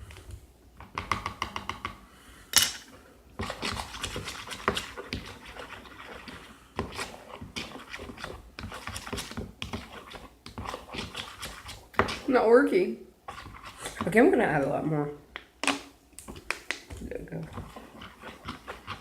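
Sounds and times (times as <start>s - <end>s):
slime stirring in a bowl: 3.3s - 12.6s, 13.2s - 14.9s, 15.7s - 19.0s.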